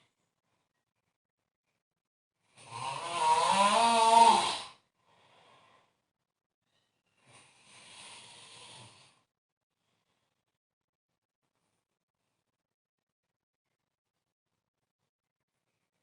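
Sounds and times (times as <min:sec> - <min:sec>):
person snoring: 0:02.6 - 0:04.8, 0:07.3 - 0:09.3
faint breath: 0:05.0 - 0:10.5.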